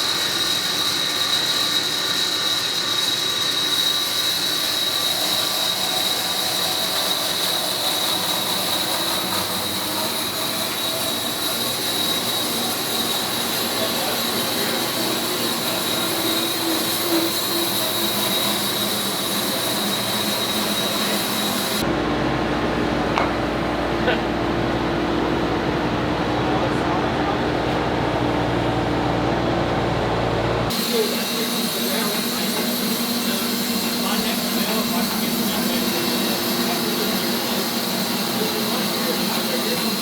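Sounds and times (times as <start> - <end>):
bandsaw blade whining: 0.0 - 21.9, 30.7 - 40.0.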